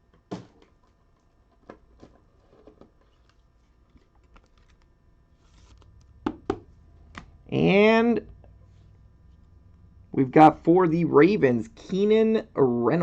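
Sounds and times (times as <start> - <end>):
trading cards clicking and tapping: 5.7 - 7.4.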